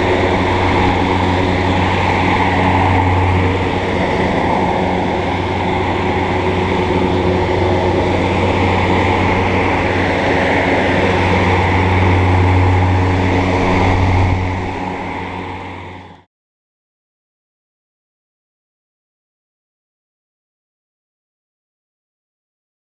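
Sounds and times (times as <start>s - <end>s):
air conditioner unit humming: 0.0s - 16.1s.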